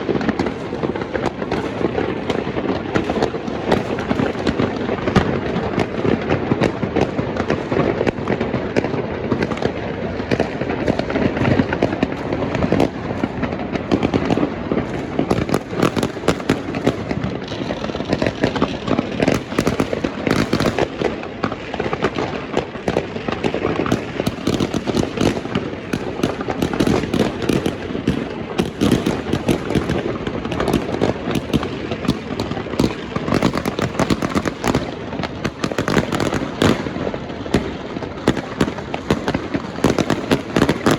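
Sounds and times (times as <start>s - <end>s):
fireworks and firecrackers exploding: 0.0s - 40.9s.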